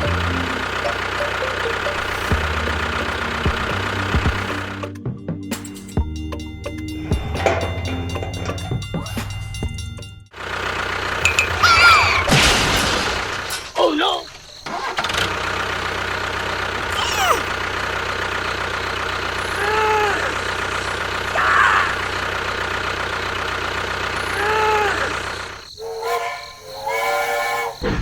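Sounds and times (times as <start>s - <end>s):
tractor engine running: 0.0s - 28.0s
voice-like pitched sounds: 16.9s - 17.6s.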